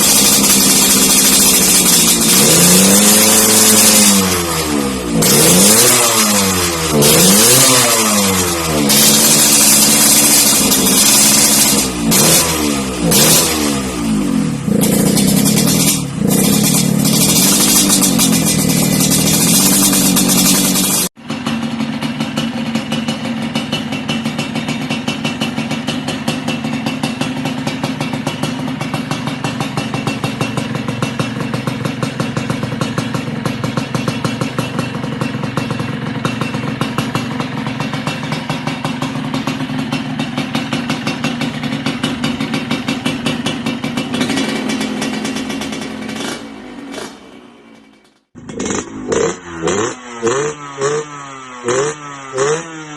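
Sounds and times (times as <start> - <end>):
two-stroke motorcycle engine idling: 0.0 - 52.9.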